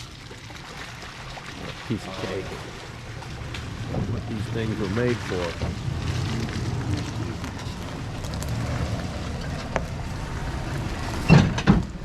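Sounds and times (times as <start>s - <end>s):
pickup engine rumble: 2.9s - 12.0s.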